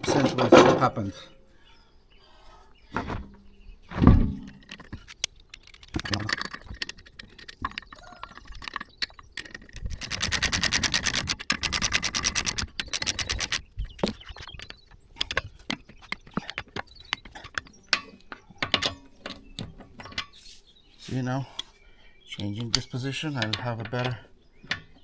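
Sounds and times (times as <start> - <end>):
sharp metallic clicks and knocks: 0.0 - 1.3, 2.9 - 20.4, 22.6 - 25.0
rapid even clicking of tool: 4.3 - 20.4.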